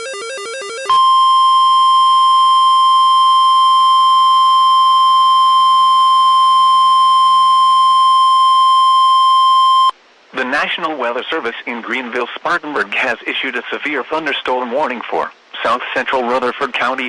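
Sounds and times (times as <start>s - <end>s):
loud steady alarm tone: 0.0s - 9.9s.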